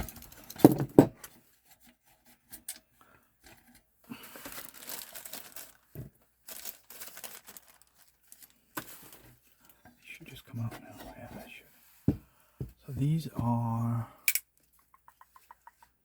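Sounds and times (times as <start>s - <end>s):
rustling and scraping: 0.0s - 13.6s.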